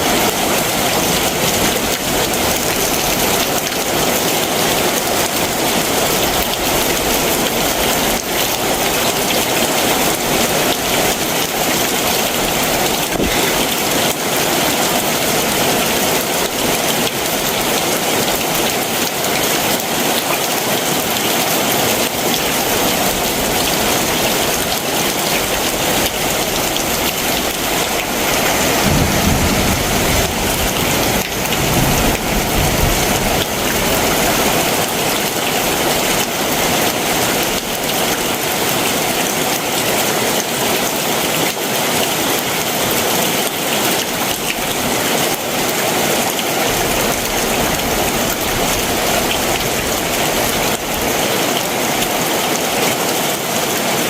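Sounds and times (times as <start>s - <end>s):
heavy rain pouring: 0.0s - 54.0s.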